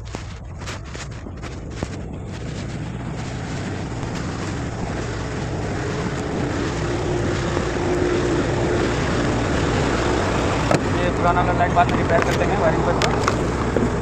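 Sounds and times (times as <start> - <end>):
large vehicle engine droning: 0.0 - 14.0.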